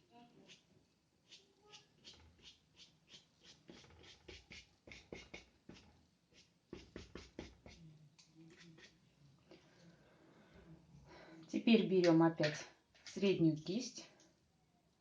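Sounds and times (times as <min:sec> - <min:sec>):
paintbrush tapping on paper: 0:03.4 - 0:07.8.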